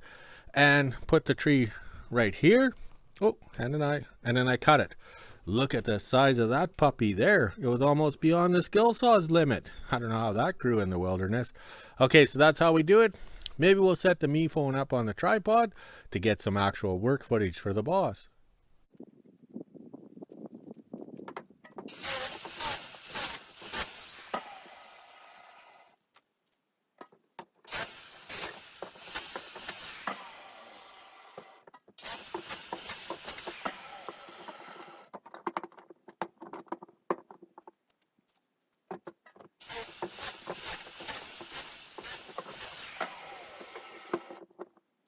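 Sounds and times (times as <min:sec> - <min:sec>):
circular saw cutting wood: 0:21.9 - 0:26.0, 0:27.7 - 0:35.1, 0:39.6 - 0:44.5
saw blade whining down: 0:21.9 - 0:26.0, 0:27.7 - 0:35.1, 0:39.6 - 0:44.5.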